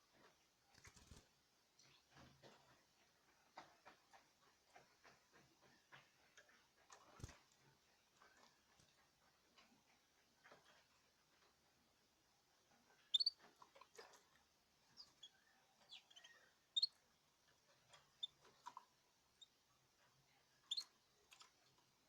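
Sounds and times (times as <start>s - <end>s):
small clicks and taps: 1.8s - 11.6s
birds chirping: 13.0s - 13.4s, 14.9s - 17.0s.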